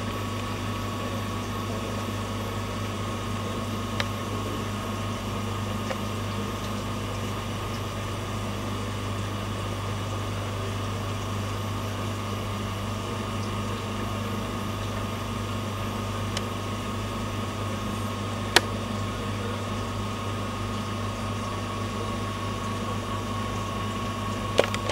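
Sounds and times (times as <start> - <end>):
aquarium pump hum: 0.0 - 24.9.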